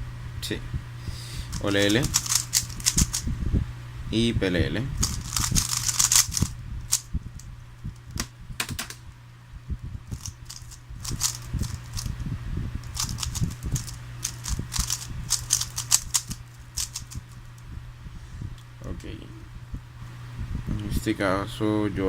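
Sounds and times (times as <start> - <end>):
steady low hum: 0.0 - 22.0
plastic puzzle cube clicking: 1.5 - 3.2, 5.0 - 7.0, 10.2 - 12.1, 12.8 - 17.2.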